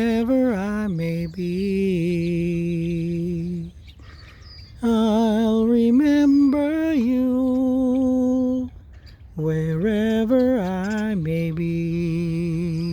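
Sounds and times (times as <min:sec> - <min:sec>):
person humming a slow melody: 0:00.0 - 0:12.9.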